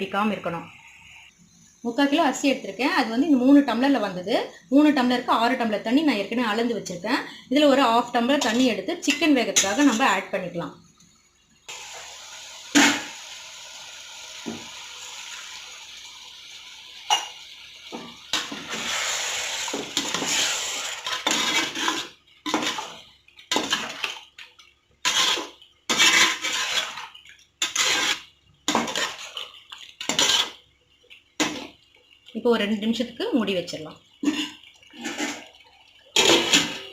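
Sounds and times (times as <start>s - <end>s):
water poured into a pot: 11.0s - 36.9s
metal spoon scraping a pot: 19.9s - 24.2s, 25.0s - 29.4s, 30.0s - 30.6s, 34.2s - 35.6s.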